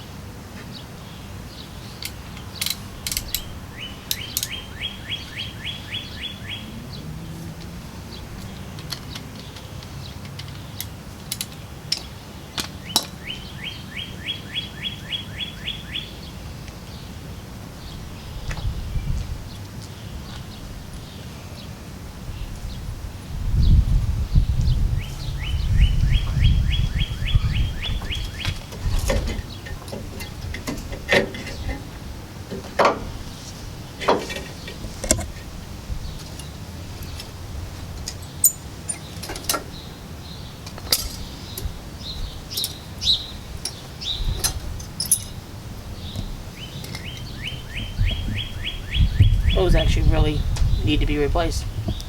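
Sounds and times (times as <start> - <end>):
bird trilling: 3.1 - 7.0, 38.1 - 49.8
metallic clinks of tools: 38.1 - 39.6, 40.6 - 41.7, 42.5 - 42.9, 43.6 - 45.5.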